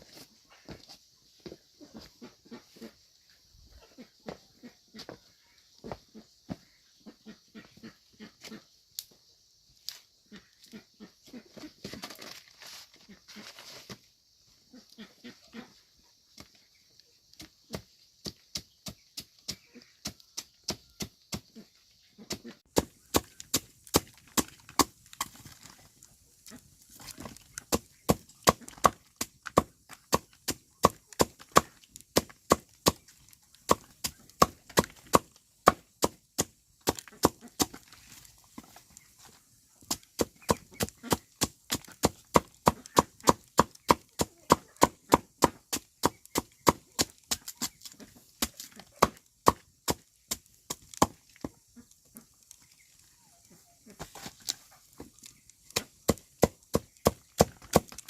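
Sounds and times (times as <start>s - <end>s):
blade chopping against wood: 22.3s - 25.3s, 27.2s - 33.1s, 33.7s - 37.8s, 39.9s - 47.8s, 48.4s - 51.2s, 55.7s - 58.0s.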